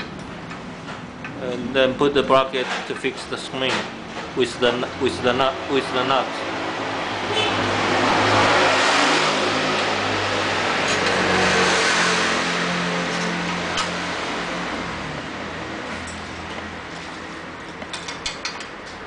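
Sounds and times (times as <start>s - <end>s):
motor vehicle passing by: 4.1s - 18.2s.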